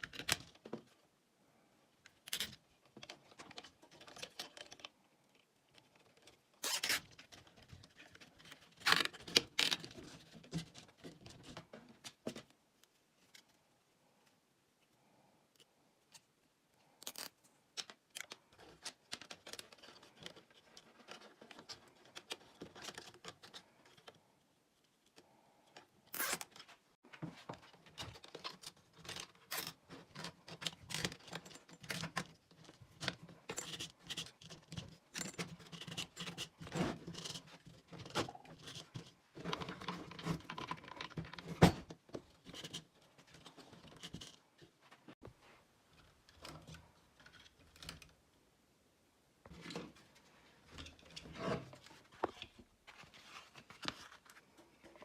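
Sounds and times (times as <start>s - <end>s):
scratching and rustling: 18.2s - 48.0s, 49.4s - 55.0s.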